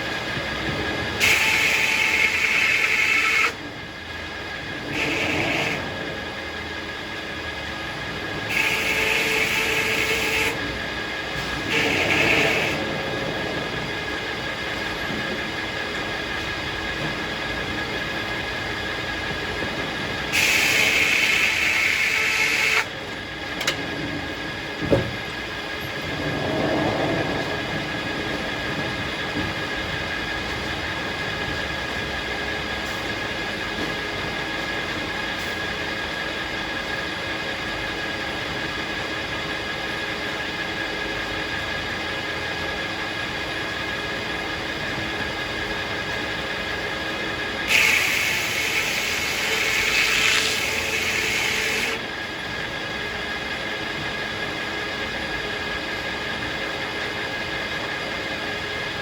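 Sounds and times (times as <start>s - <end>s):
sawmill machinery humming: 0.0s - 59.0s
loud hiss: 47.7s - 52.0s.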